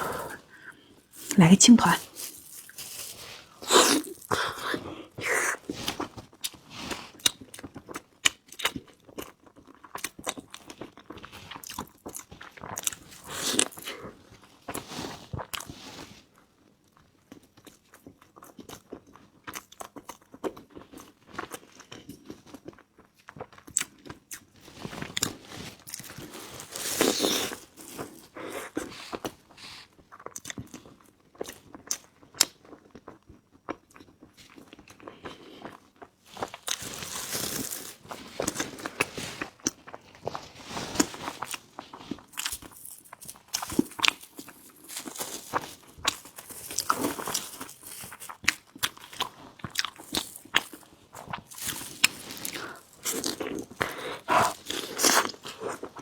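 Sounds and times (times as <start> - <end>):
close chewing and biting: 2.0 - 15.8, 17.1 - 56.0.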